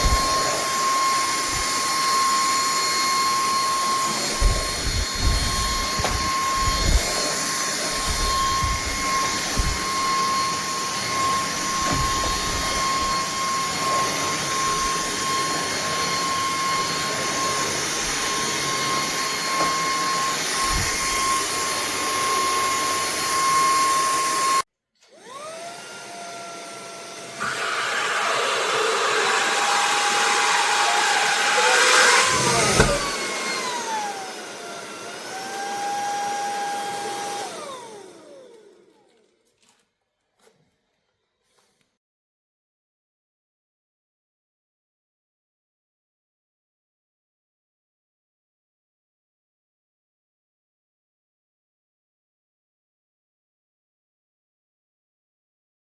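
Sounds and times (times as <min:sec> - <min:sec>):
stick vacuum running: 0:00.0 - 0:24.4, 0:25.0 - 0:38.9.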